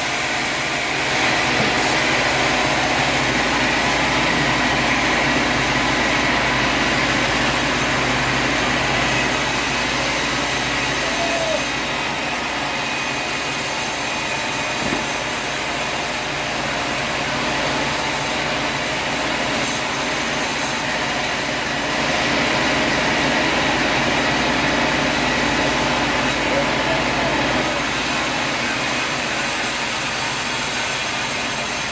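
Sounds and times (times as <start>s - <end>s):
sawmill machinery whining: 0.0s - 31.9s.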